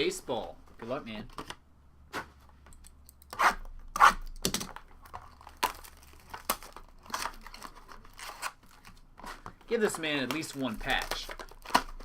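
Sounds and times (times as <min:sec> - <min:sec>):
wrapping tearing and crinkling: 0:05.1 - 0:12.0.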